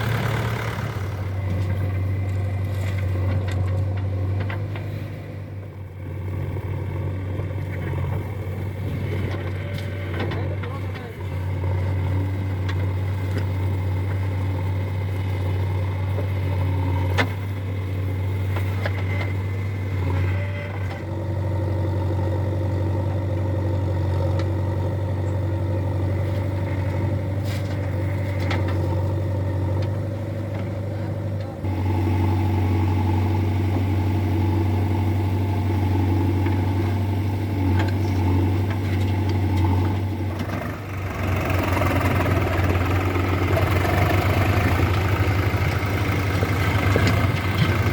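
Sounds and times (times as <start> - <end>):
diesel engine droning: 0.0 - 47.9.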